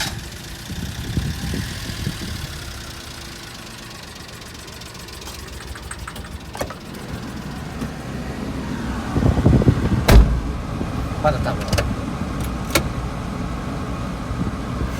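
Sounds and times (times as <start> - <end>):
engine knocking: 0.0 - 8.7
rough uneven engine idling: 0.0 - 14.9.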